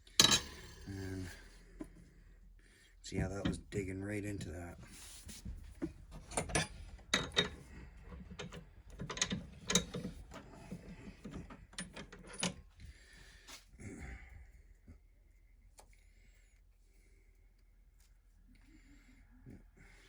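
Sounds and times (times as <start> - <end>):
hand tools clicking and scraping: 3.1 - 12.7.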